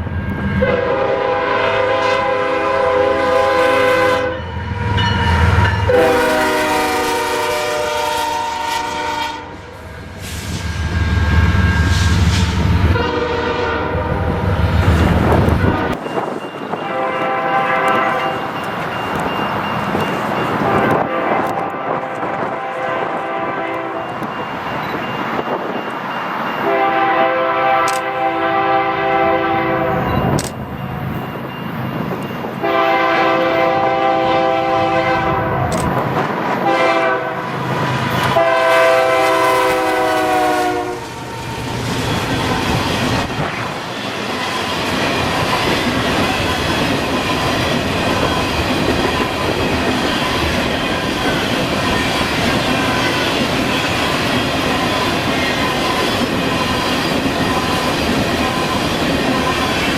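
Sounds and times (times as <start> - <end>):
train wheels rumbling on rails: 0.0 - 59.9
locomotive air horn blasts: 0.6 - 10.4, 12.9 - 14.4, 15.6 - 16.0, 16.8 - 18.5, 20.6 - 24.1, 26.6 - 30.0, 32.6 - 35.7, 36.6 - 37.6, 38.2 - 41.6.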